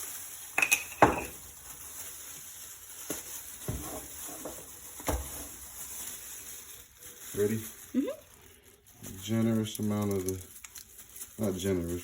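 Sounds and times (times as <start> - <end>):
food sizzling on a grill: 0.0 - 12.0
utensils knocking and clinking: 0.6 - 1.4.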